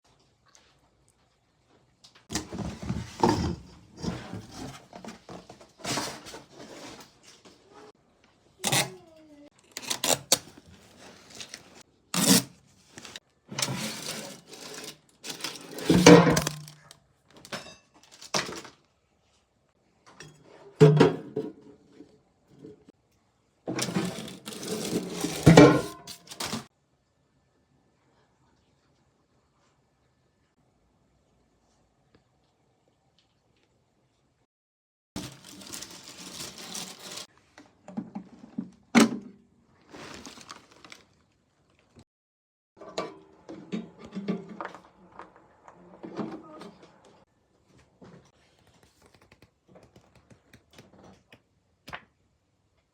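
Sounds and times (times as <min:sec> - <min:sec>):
packaging rustling and scraping: 0:02.3 - 0:08.0, 0:09.6 - 0:18.8, 0:23.8 - 0:26.7, 0:35.2 - 0:37.4, 0:39.7 - 0:42.0.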